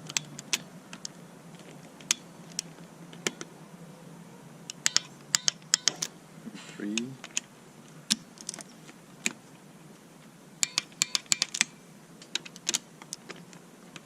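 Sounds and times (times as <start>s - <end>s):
torque wrench clicking: 10.6s - 11.7s.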